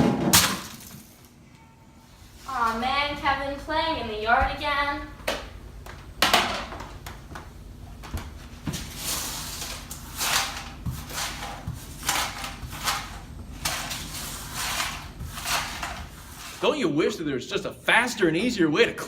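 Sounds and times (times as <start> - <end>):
rustling scraping swishes: 8.8 - 16.7.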